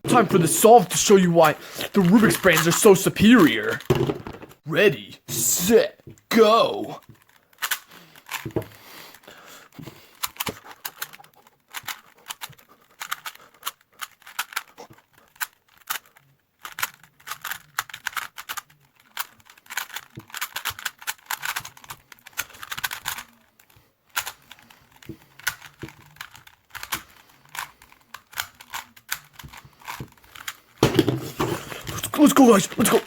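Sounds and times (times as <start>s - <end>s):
puzzle cube clicking: 0.1s - 4.4s, 5.3s - 33.0s.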